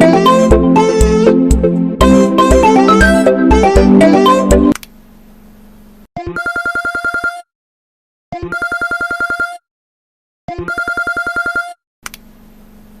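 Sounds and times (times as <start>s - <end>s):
phone ringtone trilled ring: 6.3s - 7.5s, 8.4s - 9.6s, 10.6s - 11.8s.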